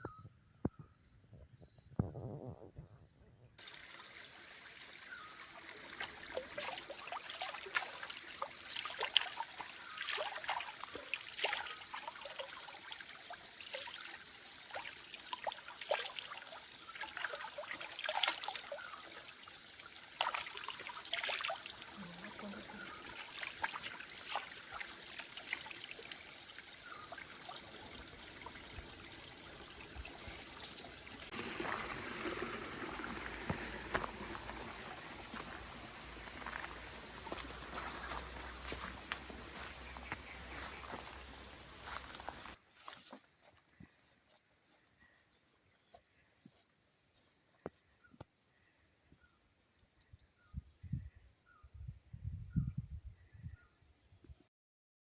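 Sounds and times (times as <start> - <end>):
water rushing: 3.6 - 42.6
water trickling in stream: 3.6 - 50.6.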